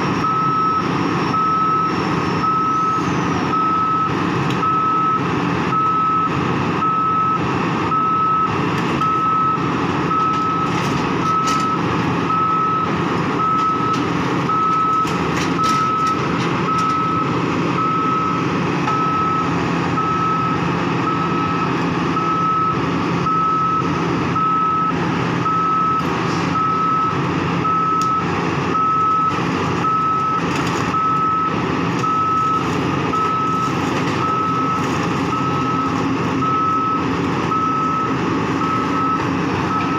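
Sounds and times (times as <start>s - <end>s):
diesel engine running: 0.0s - 39.9s
warning beeper: 5.8s - 30.4s.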